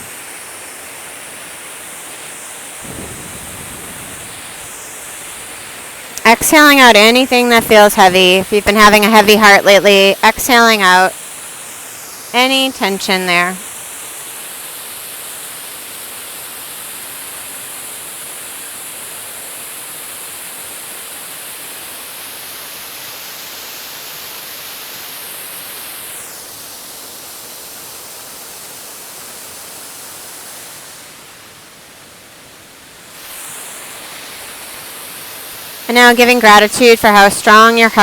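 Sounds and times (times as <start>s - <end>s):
waterfall rushing: 0.0s - 7.8s.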